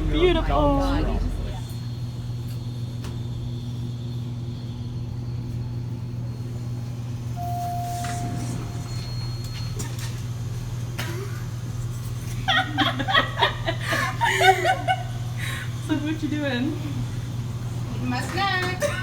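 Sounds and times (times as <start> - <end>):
low mechanical hum: 0.0 - 19.0
short high beep: 7.4 - 9.3
clear tone: 7.4 - 9.6.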